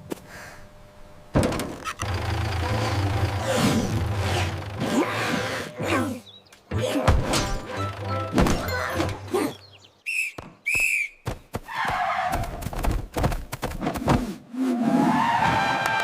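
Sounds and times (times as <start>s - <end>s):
high whistle-like tones: 10.1s - 11.2s.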